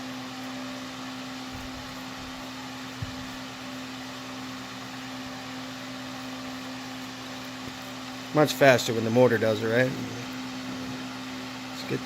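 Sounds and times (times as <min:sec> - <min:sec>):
electric fan humming: 0:00.0 - 0:12.0.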